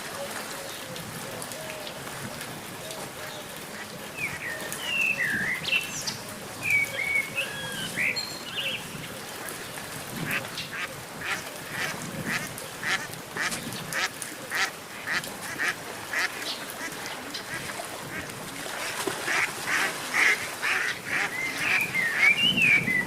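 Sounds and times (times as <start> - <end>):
birds calling: 2.8 - 18.3, 19.3 - 23.0.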